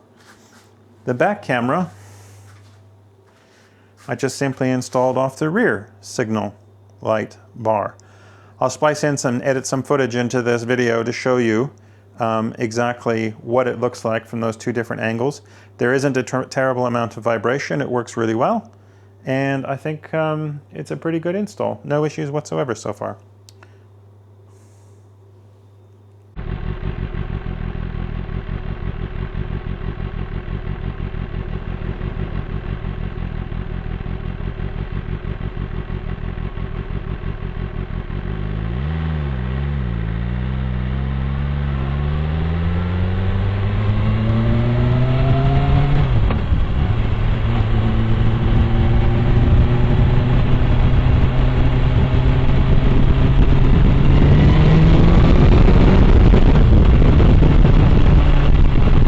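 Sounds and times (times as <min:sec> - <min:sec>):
motorcycle engine revving: 0:26.4 - 0:59.0.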